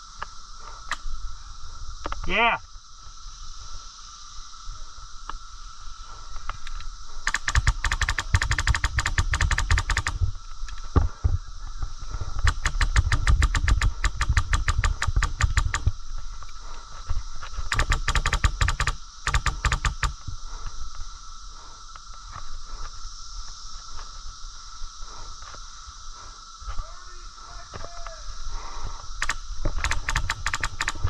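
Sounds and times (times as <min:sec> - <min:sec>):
airsoft gun firing bursts: 0:07.2 - 0:10.2, 0:12.4 - 0:15.9, 0:17.7 - 0:20.2, 0:29.2 - 0:31.0.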